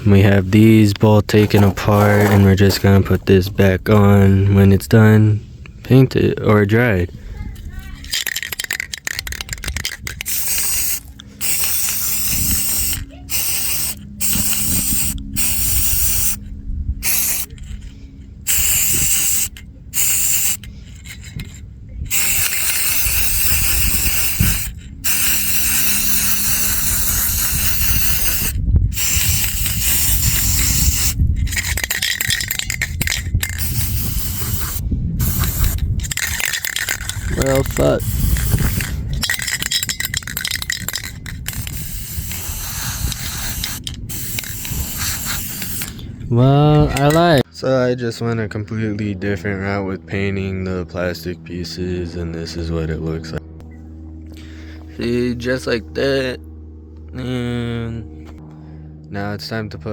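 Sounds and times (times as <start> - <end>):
spray paint can hissing: 1.4 - 2.5, 8.1 - 16.4, 17.0 - 17.8, 18.5 - 46.0.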